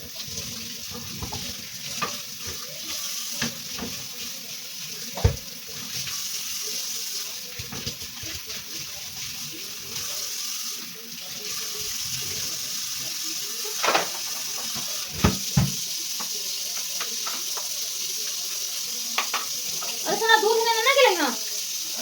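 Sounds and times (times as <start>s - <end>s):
tap water running into sink: 0.0s - 22.0s.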